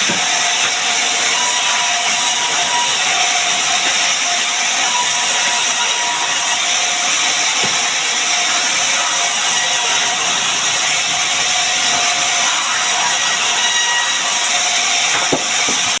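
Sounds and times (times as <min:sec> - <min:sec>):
power saw cutting timber: 0:00.0 - 0:16.0.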